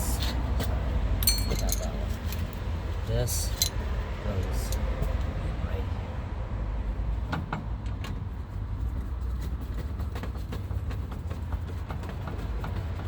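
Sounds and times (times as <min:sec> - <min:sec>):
metallic clicks of hand tools: 0:01.2 - 0:02.4.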